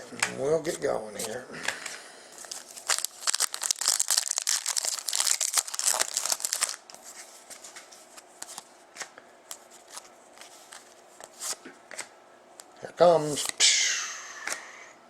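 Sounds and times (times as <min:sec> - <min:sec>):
card pack wrapper crinkling: 0:02.4 - 0:07.0.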